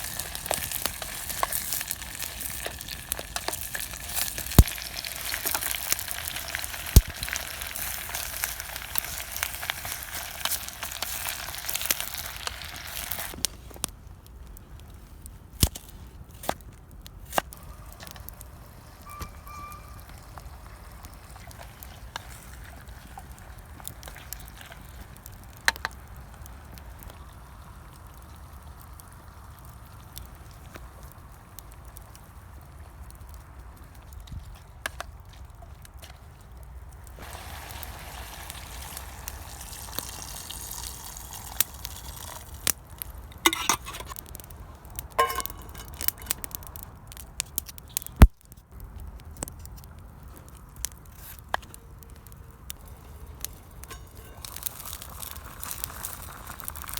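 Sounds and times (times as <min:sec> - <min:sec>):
food sizzling in a pot: 0:00.0 - 0:13.4, 0:37.2 - 0:42.7, 0:45.2 - 0:46.3, 0:53.9 - 0:56.9
campfire crackling and popping: 0:00.0 - 0:56.9.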